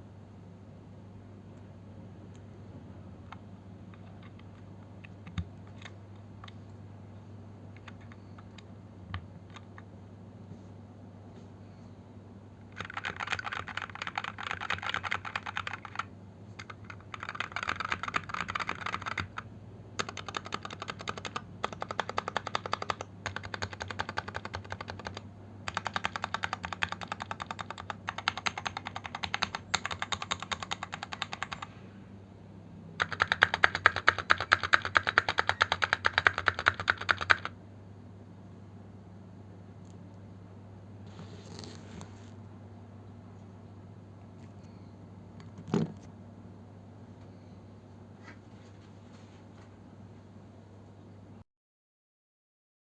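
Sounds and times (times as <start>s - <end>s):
mechanical keyboard typing: 3.3s - 6.5s, 7.8s - 9.8s, 12.7s - 31.7s, 33.0s - 37.6s.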